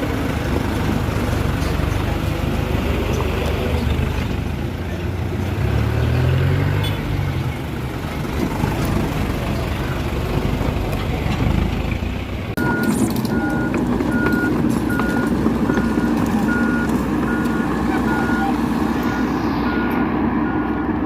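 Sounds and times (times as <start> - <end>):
excavator diesel engine running: 0.0 - 21.0
backup alarm beeping: 12.6 - 21.0.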